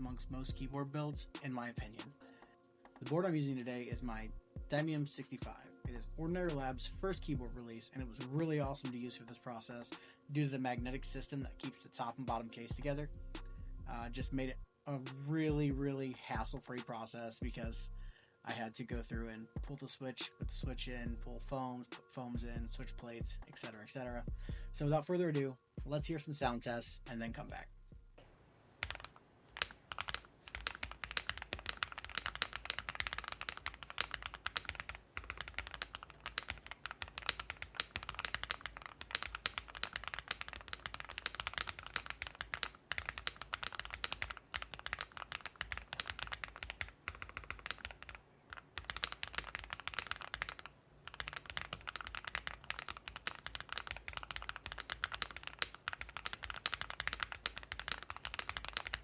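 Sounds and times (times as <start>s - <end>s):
fast mechanical keyboard typing: 11.6s - 13.0s, 28.8s - 59.0s.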